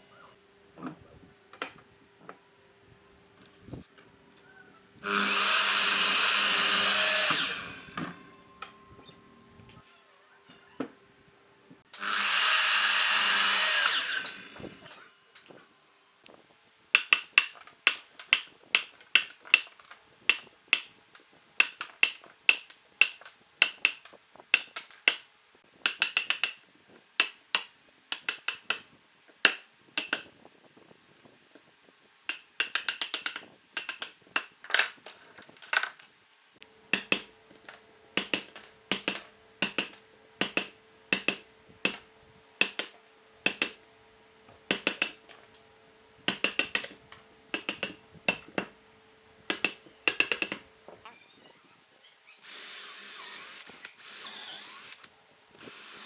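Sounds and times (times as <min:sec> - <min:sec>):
power tool running: 0:05.0 - 0:08.4, 0:11.9 - 0:15.0, 0:52.4 - 0:56.0.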